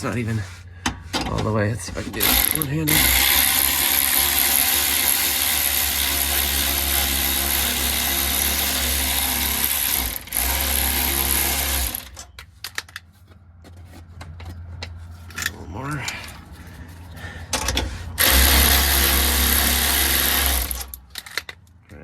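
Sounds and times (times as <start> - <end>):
handheld power tool running: 2.2 - 12.2, 18.2 - 21.4.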